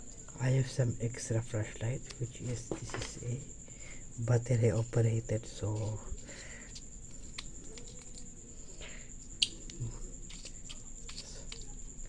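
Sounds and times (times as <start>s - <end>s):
faint high-pitched whine: 0.0s - 12.0s
soft rustles: 2.0s - 3.4s, 4.6s - 12.0s.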